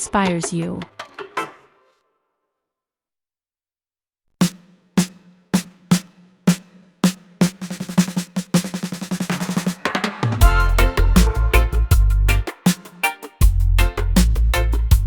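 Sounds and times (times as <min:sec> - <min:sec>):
snare drum hits and roll: 0:04.4 - 0:10.5.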